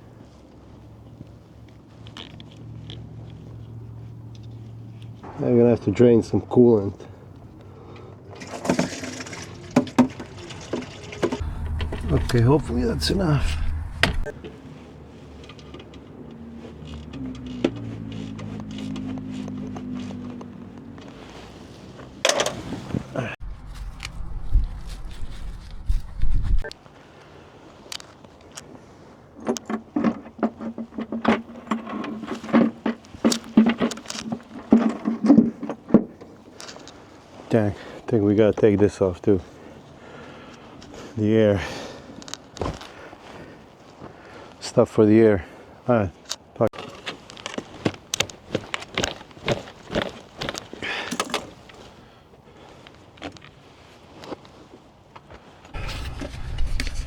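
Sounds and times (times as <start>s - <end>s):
metal tools clinking: 8.4s - 14.4s
low rumble: 11.4s - 14.4s, 23.4s - 26.7s, 55.8s - 57.0s.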